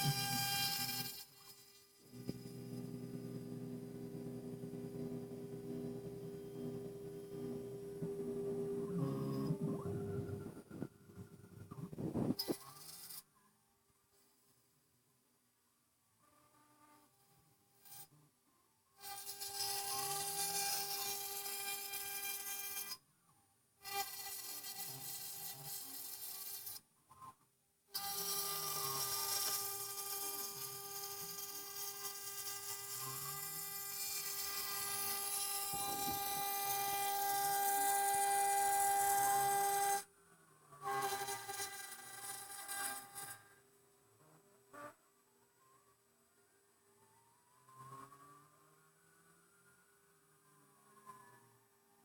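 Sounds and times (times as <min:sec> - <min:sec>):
router spindle whining: 0:00.0 - 0:13.1, 0:30.4 - 0:40.1.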